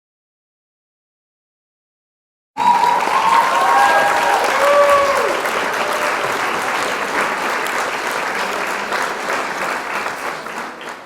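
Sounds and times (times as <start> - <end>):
crowd applauding: 2.6 - 11.0.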